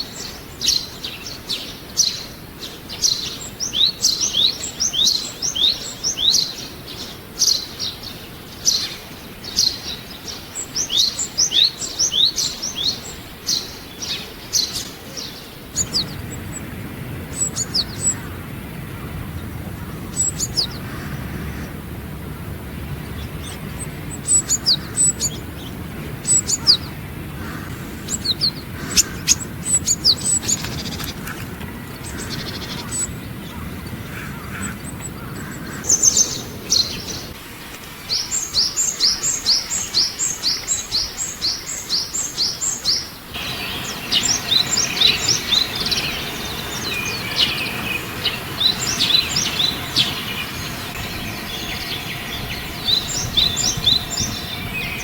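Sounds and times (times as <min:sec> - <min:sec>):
small birds chirping and singing: 0:00.0 - 0:55.0.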